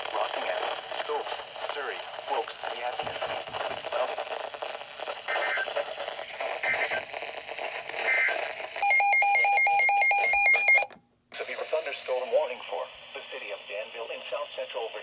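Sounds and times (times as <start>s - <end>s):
crackly radio audio: 0.0s - 15.0s
data tone bursts: 8.8s - 10.9s.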